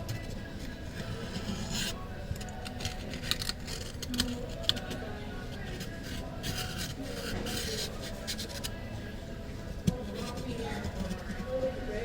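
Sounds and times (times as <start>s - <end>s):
hand tool scraping phone frame: 1.0s - 2.0s.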